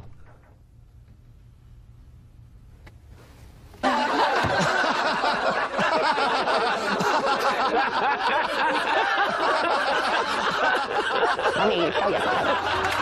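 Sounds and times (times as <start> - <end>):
many voices laughing and shrieking: 3.9 - 13.0.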